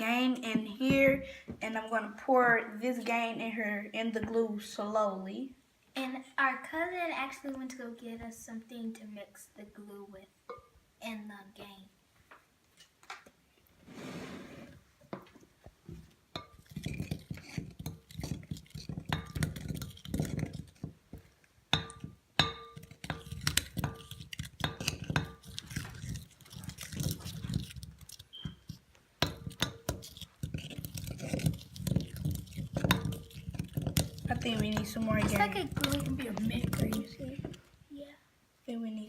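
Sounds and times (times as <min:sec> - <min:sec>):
utensil stirring slime in bowl: 0:16.3 - 0:37.7
utensil clinking against bowl: 0:29.2 - 0:37.1.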